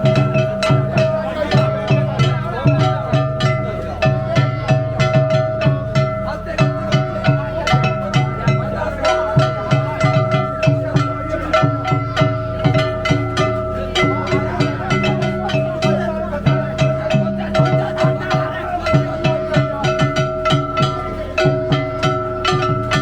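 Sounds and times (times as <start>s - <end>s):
long steady high notes: 0.0s - 23.0s
quick drum strokes: 0.0s - 23.0s.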